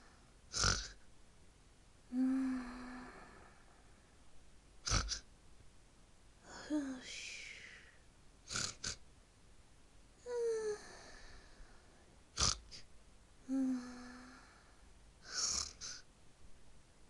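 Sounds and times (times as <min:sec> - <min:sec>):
cartoon snoring: 0:00.5 - 0:01.0, 0:04.8 - 0:05.3, 0:08.5 - 0:09.0, 0:12.4 - 0:12.8, 0:15.2 - 0:16.0.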